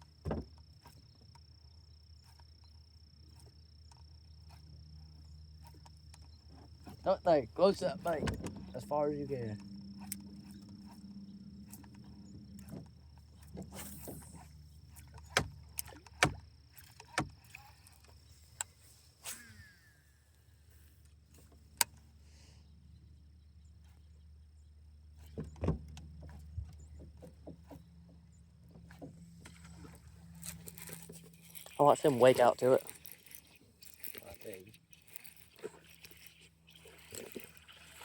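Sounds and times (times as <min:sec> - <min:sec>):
steady low hum: 0:00.0 - 0:38.0
faint high whine: 0:02.2 - 0:16.1
gear knocking against boat: 0:03.3 - 0:18.3, 0:24.9 - 0:37.7.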